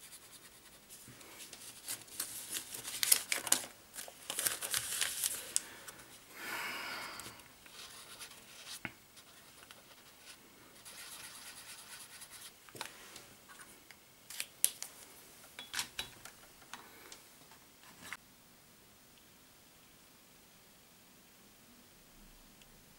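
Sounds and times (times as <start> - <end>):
paper rustling and folding: 0.9 - 6.2.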